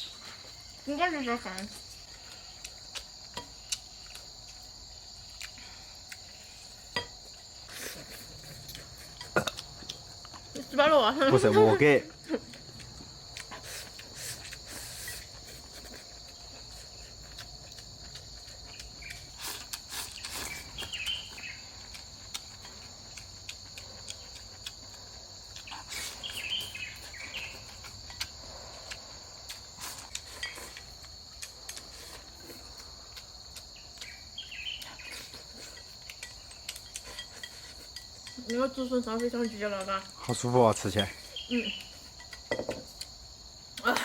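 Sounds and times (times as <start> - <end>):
crickets trilling: 0.0 - 44.0.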